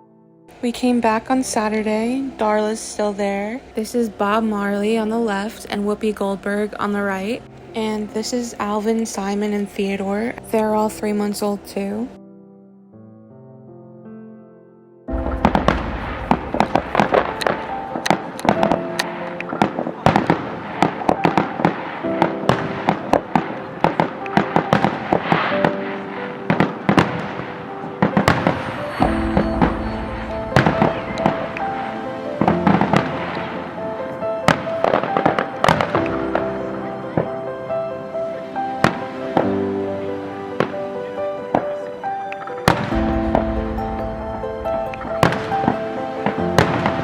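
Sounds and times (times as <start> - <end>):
music playing: 0.0 - 12.6, 15.1 - 47.0
fireworks cracking and popping: 15.1 - 31.8, 32.4 - 36.5, 42.4 - 43.6, 44.9 - 47.0.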